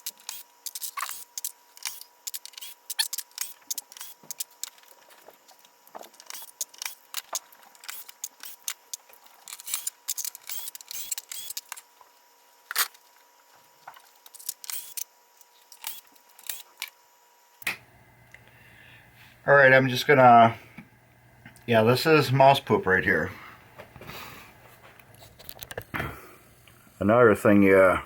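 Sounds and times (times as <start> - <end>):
small metal screws rattling: 0.0 - 5.0, 6.1 - 11.8, 14.2 - 16.9.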